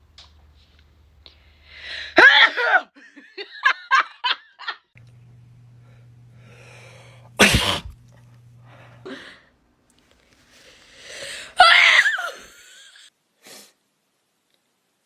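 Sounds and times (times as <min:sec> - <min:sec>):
voiced outburst: 0:05.6 - 0:09.3
person sneezing: 0:07.0 - 0:08.0
person laughing: 0:11.6 - 0:13.1.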